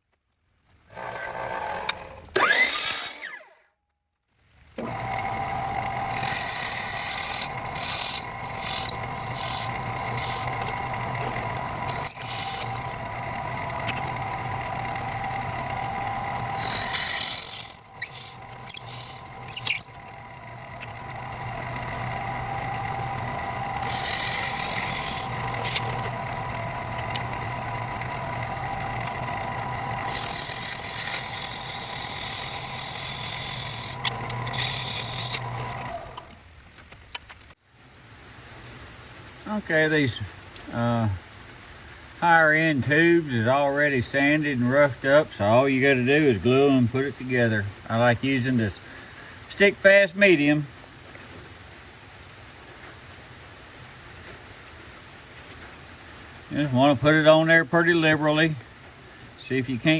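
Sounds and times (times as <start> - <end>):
woodworking machine motor whine: 0.9 - 3.6, 4.8 - 36.4
high hissy cutting noise: 4.8 - 36.3.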